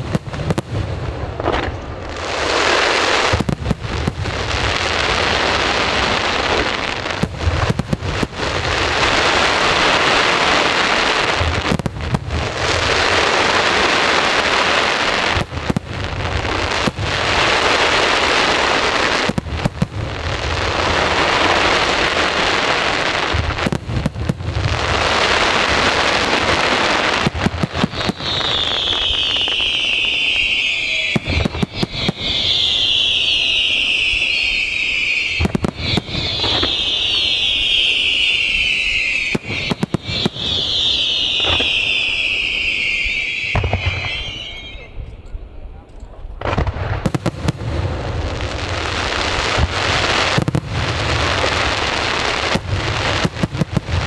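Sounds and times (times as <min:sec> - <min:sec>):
fireworks booms: 0:00.0 - 0:54.0
fireworks crackling: 0:00.0 - 0:54.0
high falling whistles: 0:28.0 - 0:45.2.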